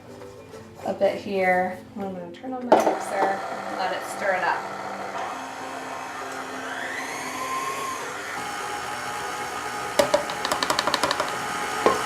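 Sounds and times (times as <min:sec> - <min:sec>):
electric stand mixer whine: 0:02.9 - 0:12.0.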